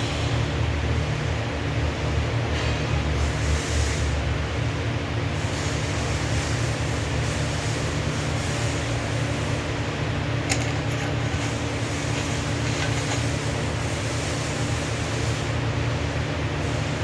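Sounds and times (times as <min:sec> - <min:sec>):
welding machine hum: 0:05.2 - 0:17.0
welding hiss: 0:05.4 - 0:09.7.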